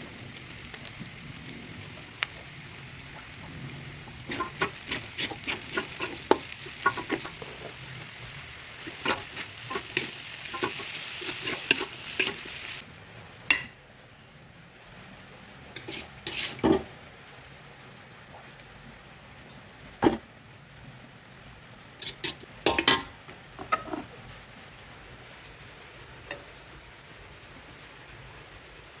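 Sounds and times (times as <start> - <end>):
food sizzling in a pan: 0.0 - 12.8, 15.8 - 16.9, 22.0 - 24.2
spatula clinking and scraping pan: 4.0 - 12.8, 15.8 - 16.9, 22.0 - 24.1.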